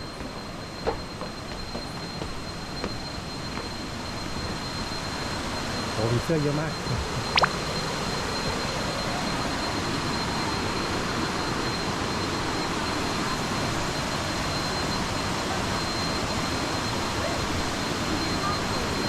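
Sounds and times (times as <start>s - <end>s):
sharp chirp: 6.7s - 7.7s
thin high tone: 6.7s - 7.7s.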